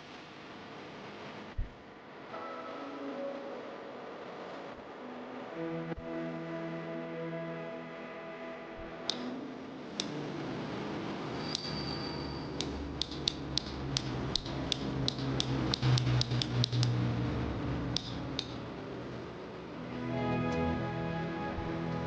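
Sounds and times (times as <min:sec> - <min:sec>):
sharp clicks: 0:09.1 - 0:09.3, 0:12.6 - 0:17.0, 0:17.9 - 0:18.6.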